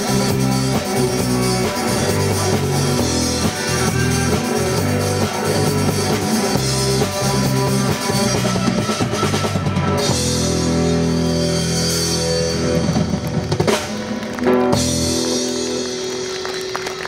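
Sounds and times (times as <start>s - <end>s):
heavy drum and cymbal hits: 0.0s - 12.6s
live rock band playing: 0.0s - 17.0s.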